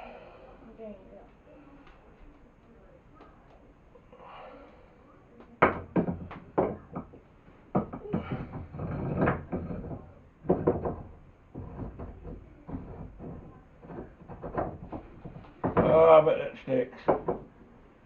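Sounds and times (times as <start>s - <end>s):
wooden and metal vise parts knocking: 5.4s - 16.2s, 17.0s - 17.6s.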